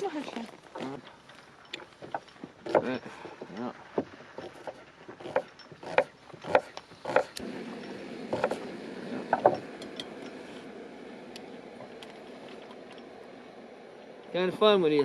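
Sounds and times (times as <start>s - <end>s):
sharp ringing clicks and knocks: 1.0s - 3.6s, 5.3s - 8.6s, 9.3s - 10.4s
steady hiss: 6.5s - 15.0s.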